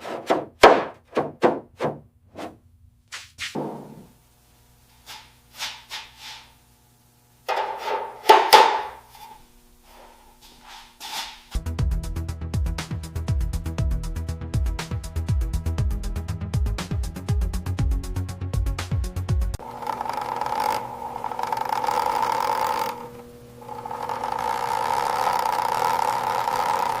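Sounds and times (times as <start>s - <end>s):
small electric motor whining: 19.6s - 27.0s.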